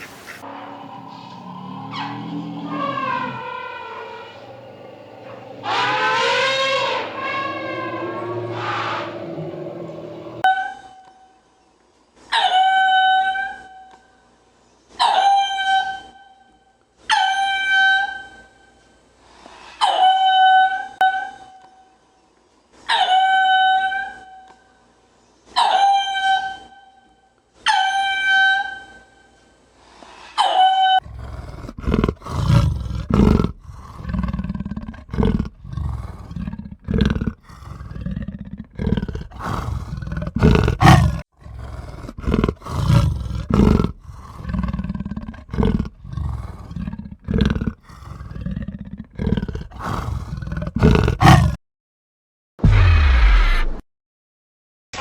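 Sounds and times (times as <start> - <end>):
animal rough low calls: 0.4 - 10.5, 31.0 - 51.6.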